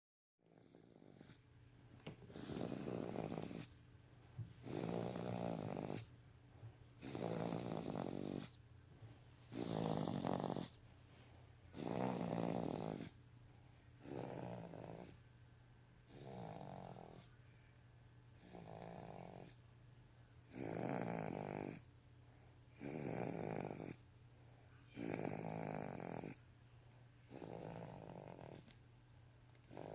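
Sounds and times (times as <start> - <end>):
person snoring: 2.3 - 3.7, 4.6 - 6.1, 7.0 - 8.6, 9.5 - 10.8, 11.7 - 13.2, 14.0 - 15.2, 16.1 - 17.2, 18.4 - 19.5, 20.5 - 21.8, 22.8 - 24.0, 25.0 - 26.4, 27.3 - 28.6, 29.7 - 29.9.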